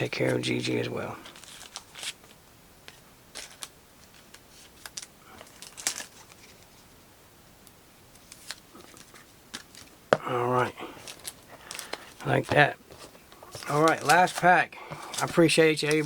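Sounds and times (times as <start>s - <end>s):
soft plastic rustles: 0.0s - 7.1s, 8.1s - 16.0s
card sliding into plastic sleeve: 11.0s - 16.0s.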